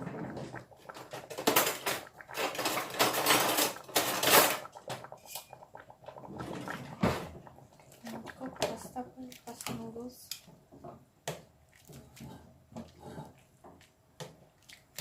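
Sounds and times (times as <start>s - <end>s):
rustling and scraping: 11.9s - 13.9s.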